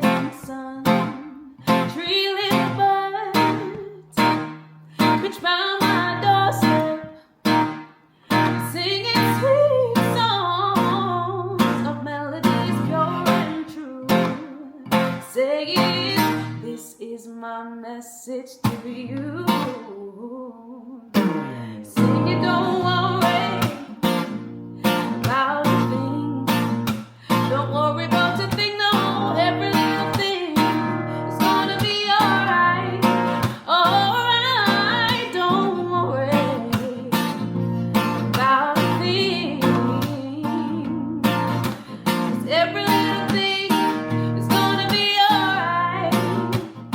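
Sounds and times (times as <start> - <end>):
strummed acoustic guitar: 0.0 - 16.8, 18.6 - 20.1, 21.1 - 46.9.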